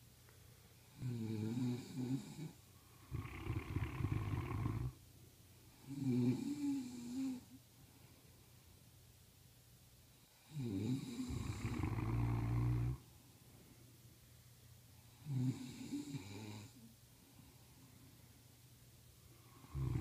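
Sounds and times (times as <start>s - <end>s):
rough noisy snore: 1.0s - 5.0s, 5.9s - 7.4s, 10.4s - 13.0s, 15.2s - 16.8s, 19.5s - 20.0s
wavering pitched snore: 1.0s - 5.0s, 5.9s - 7.4s, 10.5s - 13.0s, 19.6s - 20.0s.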